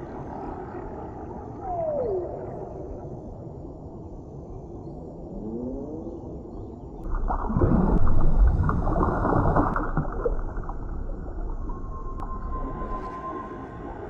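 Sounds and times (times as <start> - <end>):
underwater water rumble: 0.0 - 14.0
low moaning calls: 1.4 - 3.2.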